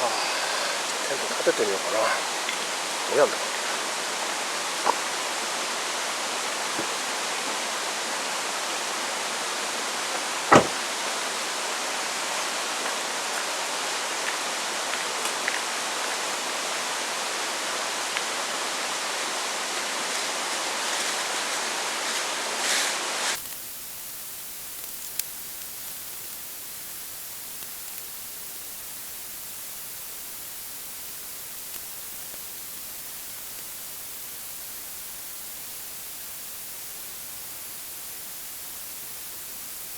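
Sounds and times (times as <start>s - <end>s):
heavy rain hiss: 0.0s - 39.9s
sharp knock: 10.5s - 10.8s.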